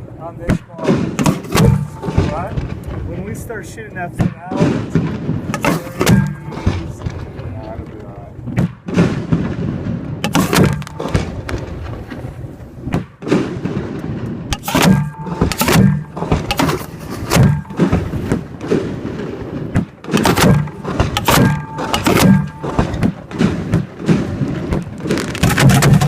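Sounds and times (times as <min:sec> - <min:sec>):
firework shells booming: 0:00.3 - 0:26.0.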